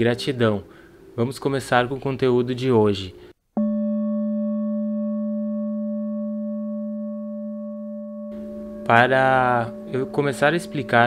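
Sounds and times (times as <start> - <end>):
singing bowl ringing: 3.6 - 11.0.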